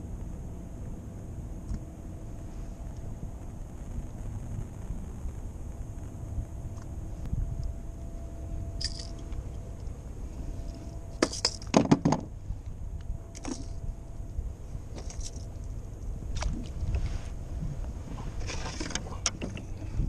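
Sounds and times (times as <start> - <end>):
wind buffeting microphone: 0.0 - 20.0
metallic clinks and knocks: 8.8 - 9.4, 11.1 - 12.3.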